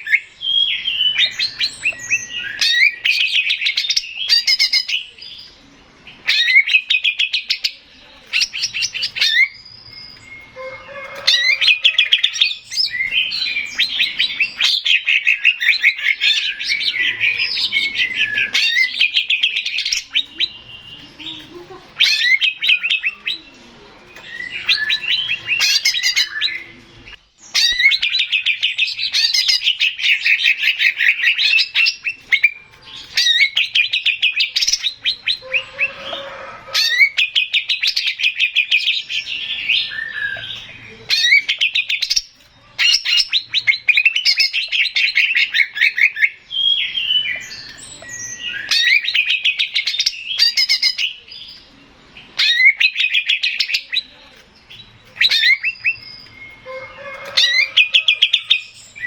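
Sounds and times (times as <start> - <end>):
bird singing trills and whistles: 0.0 - 59.0.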